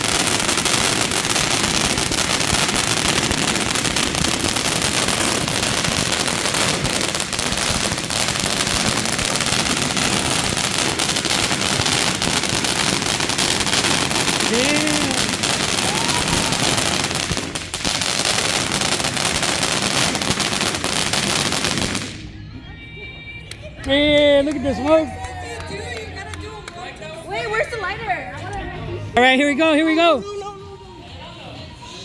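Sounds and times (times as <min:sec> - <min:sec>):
firework crackling: 0:00.0 - 0:22.3, 0:23.8 - 0:27.5.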